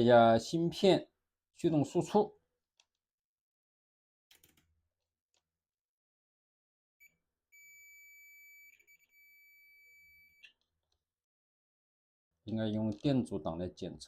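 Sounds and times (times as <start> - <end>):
multimeter continuity beep: 7.0 - 10.6.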